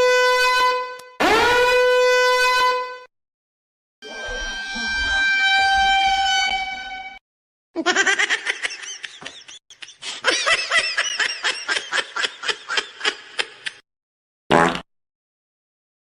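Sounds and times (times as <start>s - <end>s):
horn sounding: 0.0s - 3.1s.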